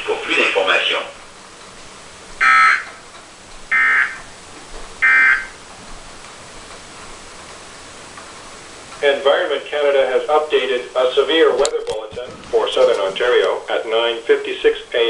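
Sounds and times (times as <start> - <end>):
faint radio hiss: 0.0 - 15.0
warbling digital code tones: 2.4 - 3.0, 3.7 - 4.3, 5.0 - 5.6.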